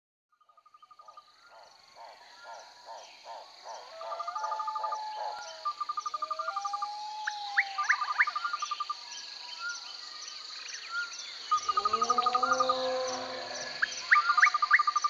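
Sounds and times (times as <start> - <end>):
high insect drone: 1.1 - 15.0
upward-sweeping bird calls: 3.7 - 8.8.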